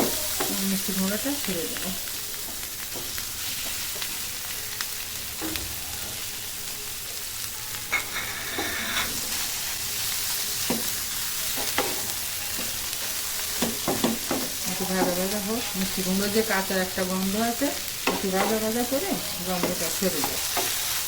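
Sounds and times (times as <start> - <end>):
pumpkin sizzling in hot fat: 0.0 - 21.0
spatula scraping a pan: 7.9 - 9.6.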